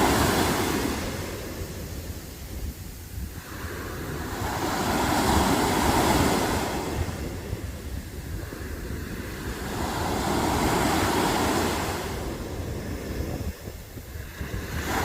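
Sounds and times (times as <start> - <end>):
waves breaking on a beach: 0.0 - 15.0
wind rumbling on microphone: 0.0 - 15.0.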